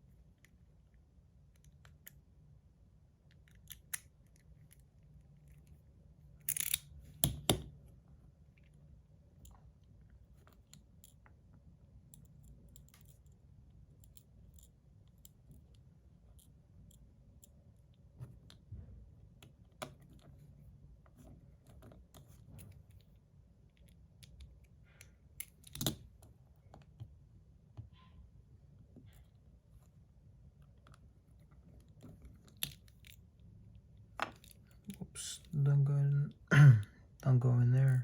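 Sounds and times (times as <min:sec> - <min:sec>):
small metal parts clicking: 0:06.4 - 0:07.2.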